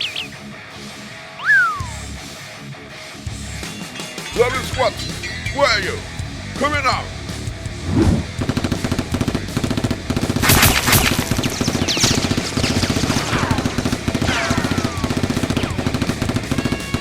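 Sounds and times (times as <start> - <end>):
rapid automatic gunfire: 8.4 - 17.0.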